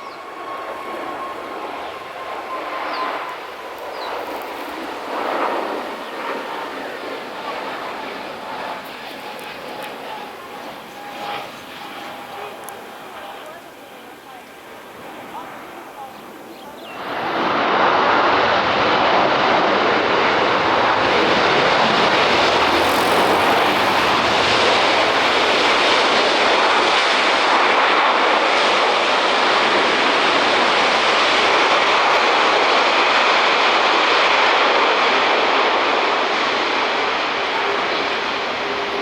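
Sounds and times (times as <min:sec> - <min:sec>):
jet engines roaring at takeoff: 0:00.0 - 0:39.0.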